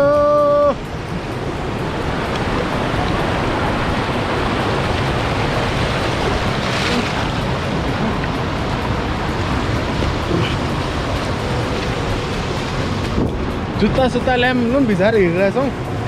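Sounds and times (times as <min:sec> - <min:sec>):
stream water rushing: 0:00.0 - 0:16.0.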